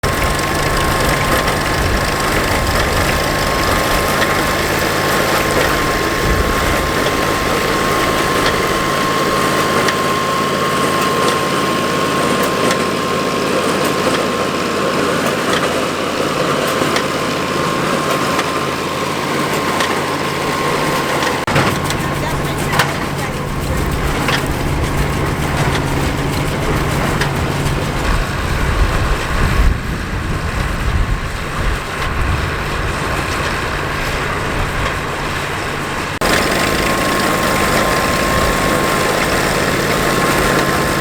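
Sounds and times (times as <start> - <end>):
tractor engine running: 0.0 - 41.0.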